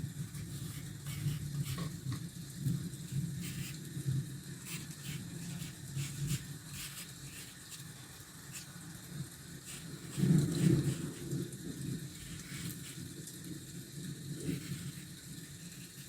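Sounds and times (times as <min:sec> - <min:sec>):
rain pattering: 0:02.2 - 0:05.1, 0:07.3 - 0:16.0.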